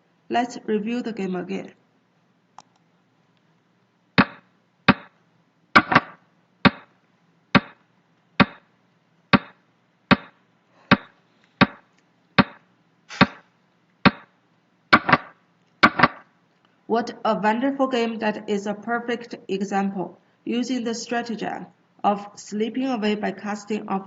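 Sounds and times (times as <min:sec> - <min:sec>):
game pieces clacking on board: 0:15.0 - 0:16.2.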